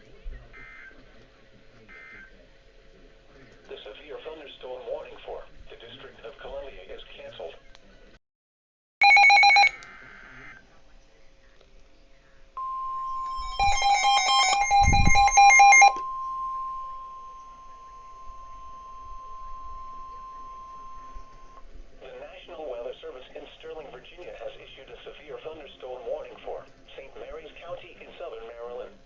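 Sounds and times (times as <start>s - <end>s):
electronic beeping: 9.0s - 9.8s, 12.6s - 21.7s
steady alert tone: 12.6s - 21.6s.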